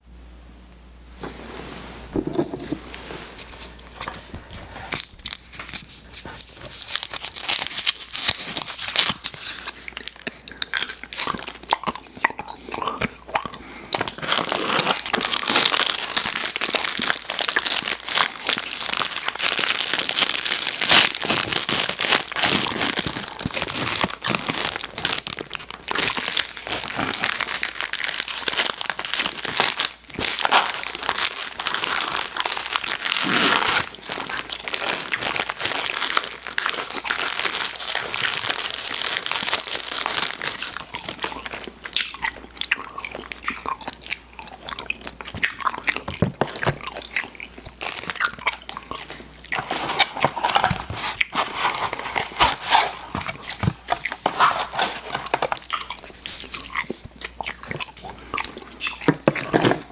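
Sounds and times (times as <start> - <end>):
plastic wrappers crinkling: 2.1 - 11.7, 12.4 - 59.9.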